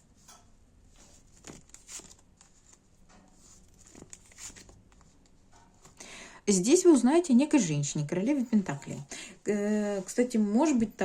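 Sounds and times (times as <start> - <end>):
cards rustling and brushing: 0.9 - 6.0.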